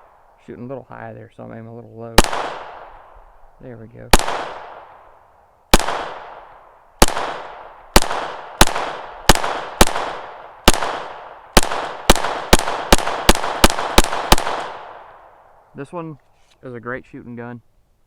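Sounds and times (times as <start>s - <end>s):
pistol shots with echo: 2.2s - 3.1s, 4.1s - 5.1s, 5.7s - 15.2s.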